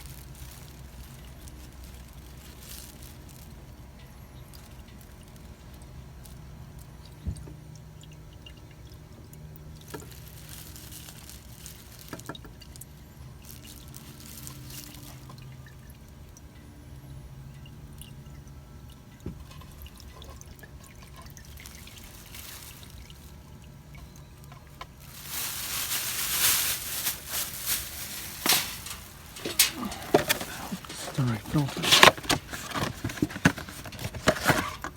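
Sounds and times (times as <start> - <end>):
fuel pouring and dripping: 0.0 - 34.9.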